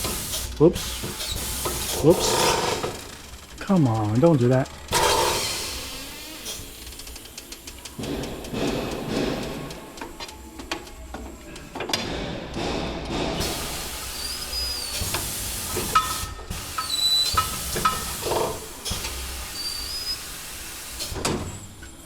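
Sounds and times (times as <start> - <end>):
pressurised air hissing: 0.0 - 22.0
brief whistles: 14.0 - 15.1, 16.8 - 17.5, 19.5 - 20.4.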